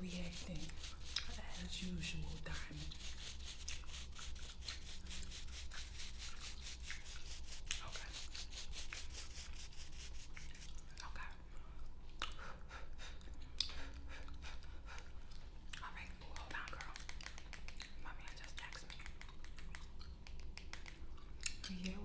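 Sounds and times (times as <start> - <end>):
scratchy rubbing on fingernails: 0.0 - 10.7
steady low hum: 0.0 - 17.0.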